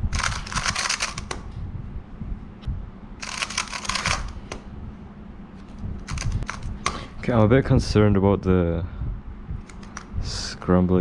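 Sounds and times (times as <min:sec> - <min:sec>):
puzzle cube plastic clicking: 0:00.2 - 0:01.4.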